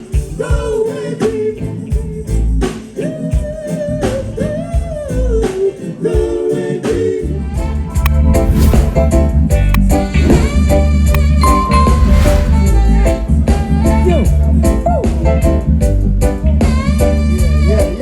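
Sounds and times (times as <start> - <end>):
reggae song with vocals: 0.0 - 8.5, 12.6 - 18.0.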